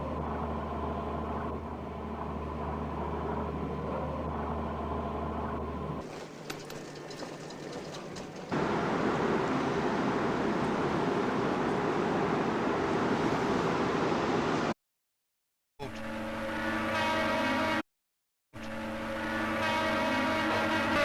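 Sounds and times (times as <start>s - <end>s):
low engine drone: 0.0s - 14.7s
wind and sea noise: 7.7s - 14.7s.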